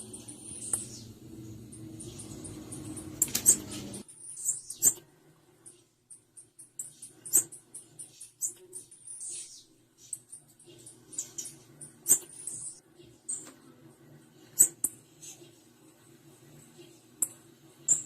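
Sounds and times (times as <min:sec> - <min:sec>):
low hum: 0:00.0 - 0:06.3.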